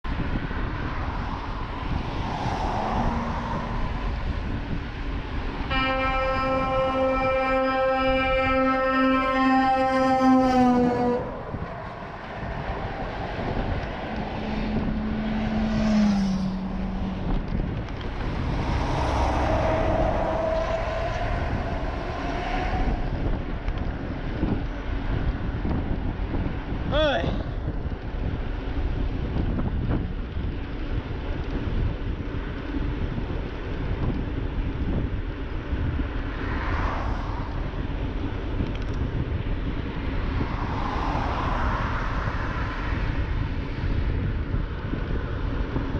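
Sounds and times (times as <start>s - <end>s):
wind noise: 0.0s - 45.9s
dump truck rumble: 3.0s - 26.7s
truck horn blast: 5.6s - 12.1s, 18.6s - 24.6s.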